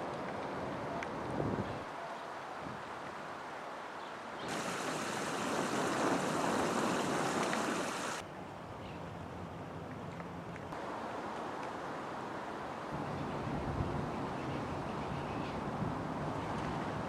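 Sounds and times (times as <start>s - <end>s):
outdoor rushing noise: 4.5s - 8.2s.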